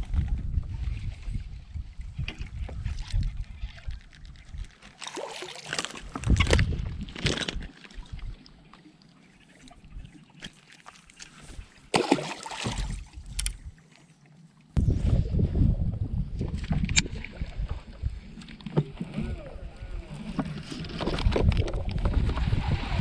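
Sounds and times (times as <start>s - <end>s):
water lapping against boat hull: 0.0s - 14.8s
low rumble: 14.8s - 18.2s.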